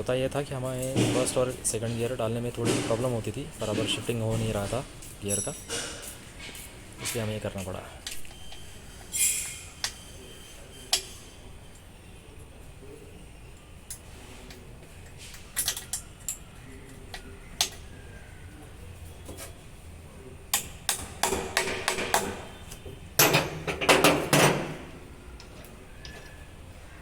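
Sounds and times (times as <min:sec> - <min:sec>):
metal tools clicking and knocking: 0:13.9 - 0:17.9, 0:20.5 - 0:26.4
metal clanking and rattling: 0:23.2 - 0:26.4.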